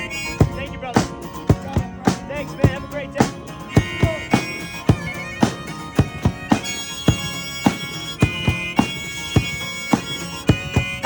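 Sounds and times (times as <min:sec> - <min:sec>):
reedy wind instrument: 0:00.0 - 0:01.4, 0:03.4 - 0:11.0
sharp percussive beat: 0:00.0 - 0:11.0.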